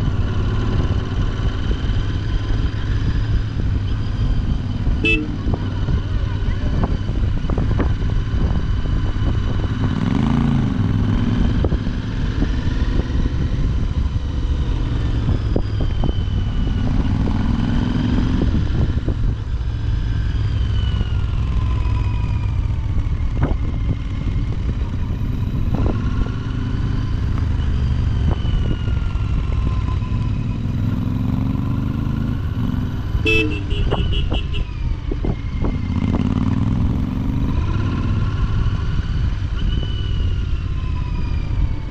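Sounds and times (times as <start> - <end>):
motorcycle engine revving: 0.0 - 41.9
vehicle horn beeping: 5.0 - 5.6, 33.2 - 34.8.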